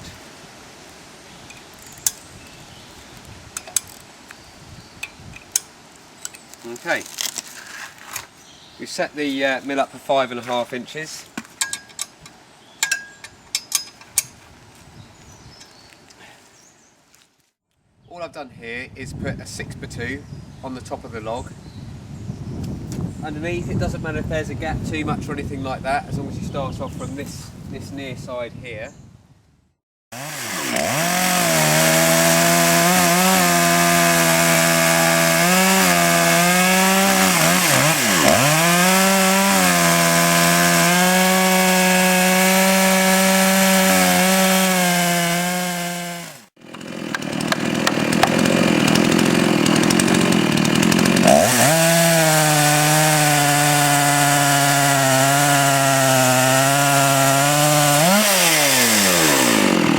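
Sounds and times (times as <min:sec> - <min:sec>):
chainsaw ripping along a log: 0:06.6 - 0:08.3, 0:30.2 - 0:59.9.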